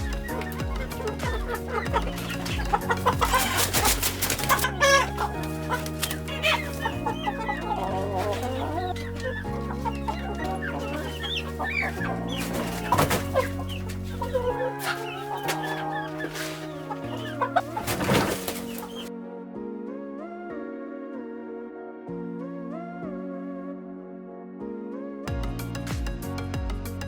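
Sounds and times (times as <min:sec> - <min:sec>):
chickens clucking: 0:00.0 - 0:19.1
background music with chords: 0:00.0 - 0:27.0.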